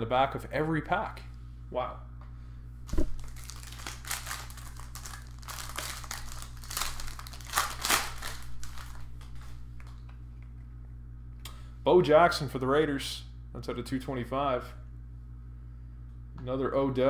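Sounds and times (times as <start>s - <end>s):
plastic packaging crinkling: 2.9s - 10.1s.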